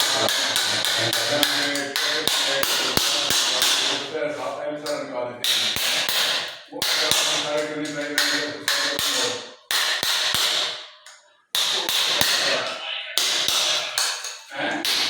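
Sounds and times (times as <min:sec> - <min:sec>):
tool tapping on drain grate and tile: 0:00.0 - 0:04.1, 0:04.8 - 0:15.0.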